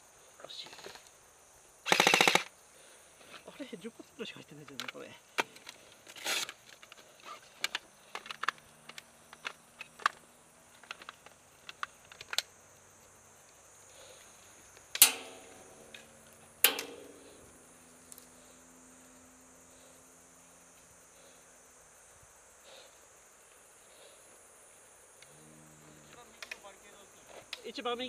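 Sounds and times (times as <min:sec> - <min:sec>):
insects buzzing: 0:00.0 - 0:28.0
loud sharp cracks: 0:01.8 - 0:02.5, 0:15.0 - 0:17.6
handling clicks and knocks: 0:15.0 - 0:17.6.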